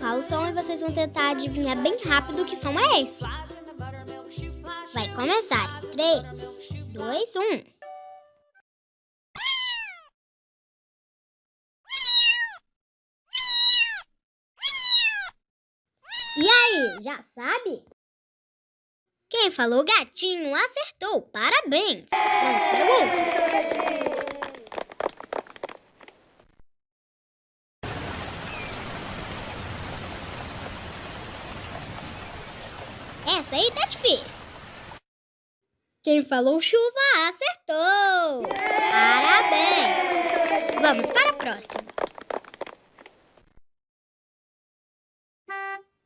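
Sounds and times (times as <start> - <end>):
cat meowing: 9.4 - 10.1, 11.9 - 12.6, 13.3 - 15.4, 16.0 - 17.0, 22.2 - 24.5, 38.4 - 41.2
steady rain falling: 27.8 - 35.0.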